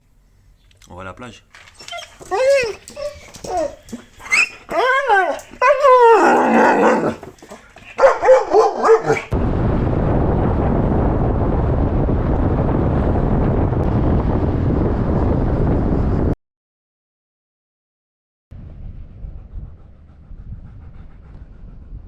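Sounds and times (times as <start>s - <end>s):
dog whining and yelping: 1.6s - 9.4s
dog barking: 1.9s - 9.4s.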